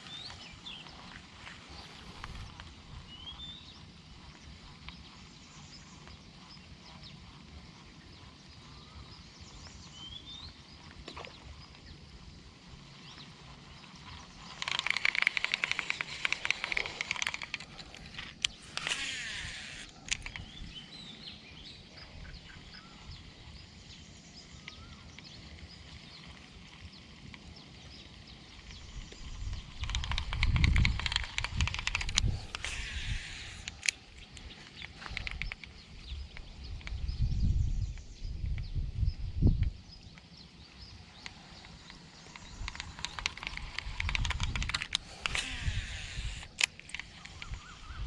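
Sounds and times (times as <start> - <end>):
fishing reel whirring: 0.0 - 21.0, 21.8 - 37.4, 40.6 - 48.0
faint bird calls: 28.5 - 37.1, 39.9 - 48.0.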